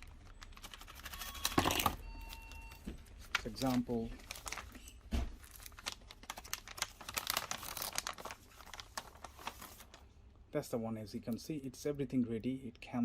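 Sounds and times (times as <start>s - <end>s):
plastic packaging crinkling: 0.0s - 10.1s.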